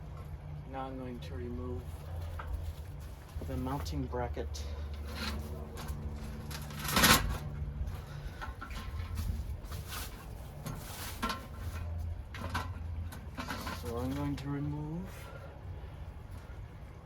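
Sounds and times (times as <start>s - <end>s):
metal bracket scraping: 4.6s - 15.2s.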